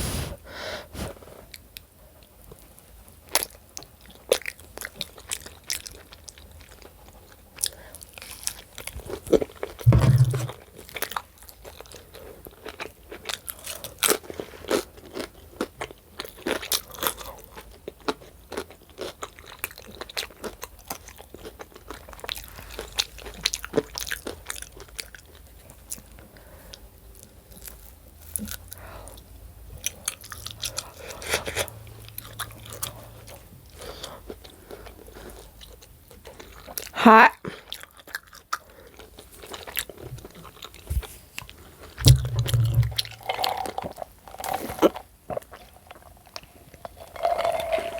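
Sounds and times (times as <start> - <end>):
person chewing and crunching food: 3.3 - 47.9
loud low thump: 9.9 - 10.5, 42.0 - 43.3
mouth clicks: 42.0 - 43.3.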